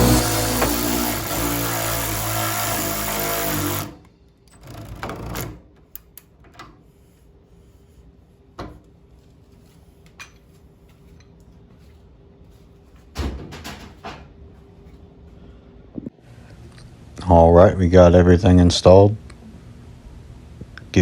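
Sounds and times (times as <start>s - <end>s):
background music: 0.0s - 1.3s.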